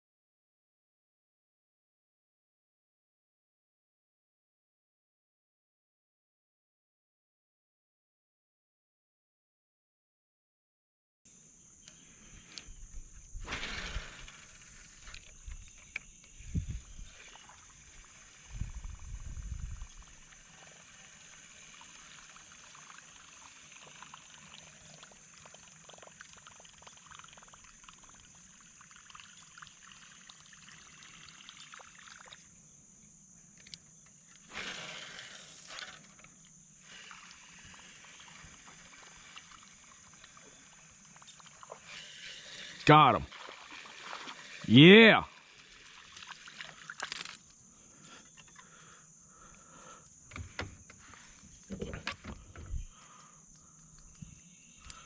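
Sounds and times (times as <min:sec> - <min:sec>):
river water trickling and lapping: 0:13.5 - 0:32.6, 0:34.3 - 0:44.7, 0:45.3 - 0:48.8.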